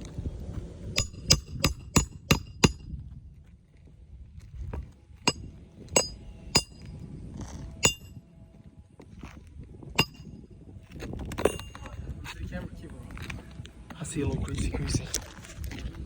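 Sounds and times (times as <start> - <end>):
ringing clinks of hard objects: 5.3 - 6.9, 7.8 - 8.2, 10.0 - 10.3, 11.4 - 12.0.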